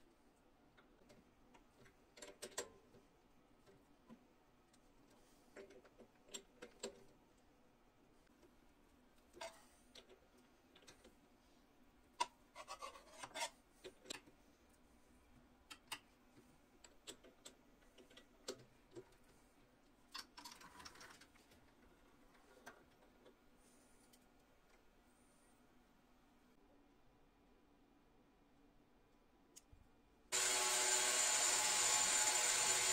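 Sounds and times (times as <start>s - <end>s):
faint clicks of hand work: 24.0s - 24.9s, 29.1s - 29.9s.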